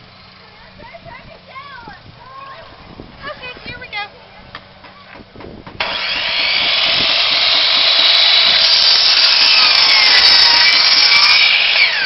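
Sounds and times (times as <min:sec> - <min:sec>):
mitre saw cutting wood: 0:05.8 - 0:12.0.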